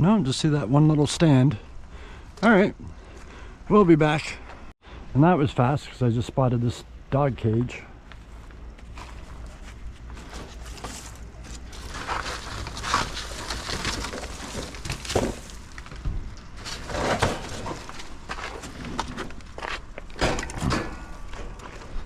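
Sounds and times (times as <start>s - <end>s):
footsteps: 7.4s - 22.0s
junk crunching and knocking: 8.1s - 22.0s.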